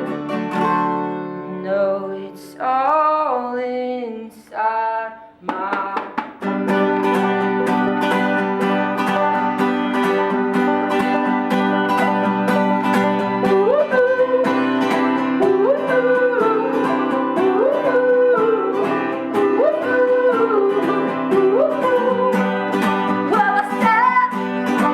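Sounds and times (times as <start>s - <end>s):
acoustic guitar picking: 0.0s - 4.3s, 5.3s - 24.9s
banjo picking: 5.5s - 24.9s.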